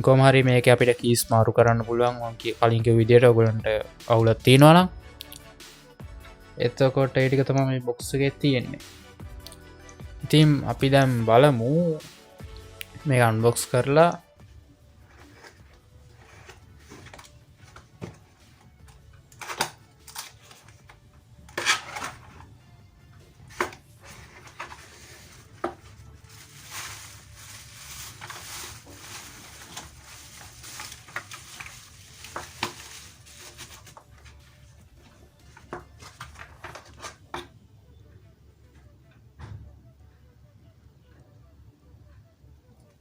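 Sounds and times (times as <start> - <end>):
packaging rustling: 15.0 - 22.5, 23.5 - 37.2.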